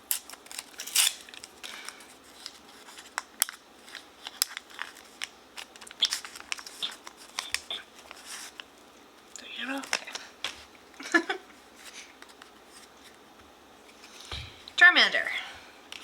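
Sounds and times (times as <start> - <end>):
plastic wrapper crinkling: 0.0 - 8.7, 9.7 - 10.6.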